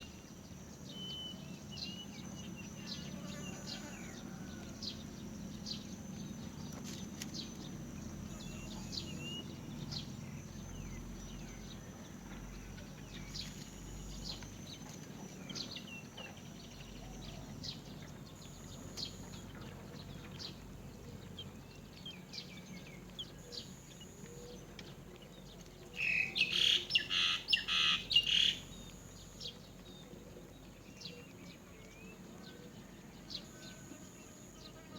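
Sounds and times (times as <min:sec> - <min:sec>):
rapid harsh bird calls: 0:26.5 - 0:28.6.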